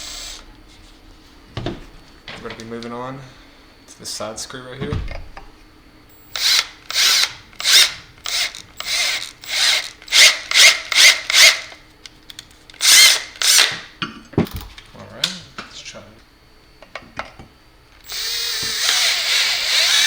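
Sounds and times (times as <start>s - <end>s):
power drill tapping threads: 0.0s - 0.4s, 6.3s - 11.8s, 12.8s - 13.8s, 18.0s - 20.0s.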